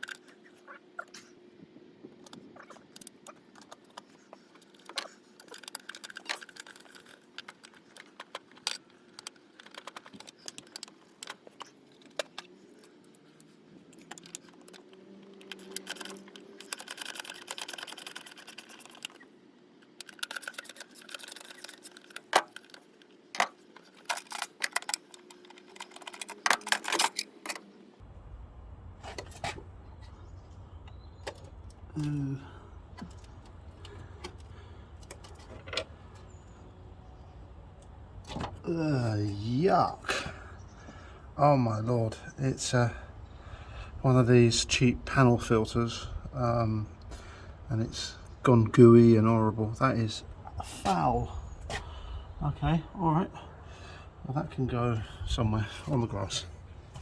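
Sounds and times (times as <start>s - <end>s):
hand tools clinking on plastic: 2.2s - 19.2s, 19.8s - 27.7s
low steady rumble: 28.0s - 57.0s.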